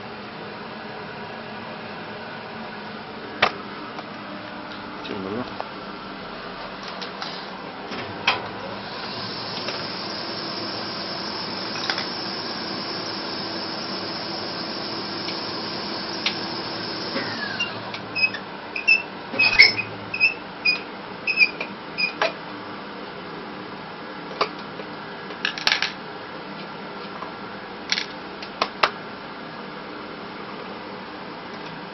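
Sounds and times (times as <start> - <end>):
small motor running: 8.6 - 18.0.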